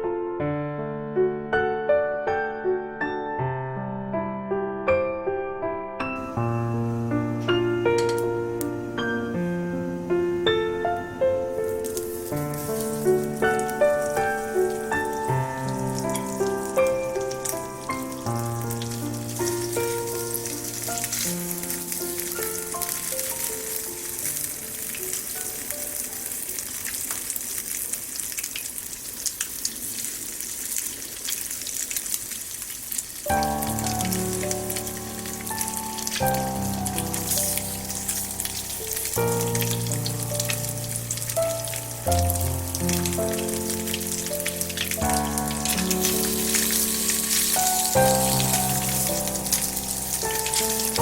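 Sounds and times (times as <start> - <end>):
melodic background music: 5.5 - 26.0, 33.3 - 51.0
food sizzling in a frying pan: 6.2 - 51.0.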